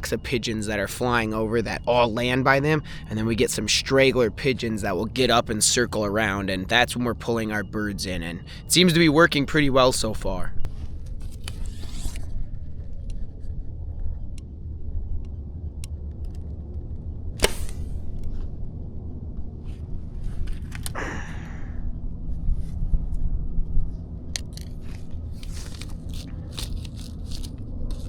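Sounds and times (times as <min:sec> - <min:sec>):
low rumble: 0:10.4 - 0:28.0
sharp snap: 0:17.4 - 0:18.0.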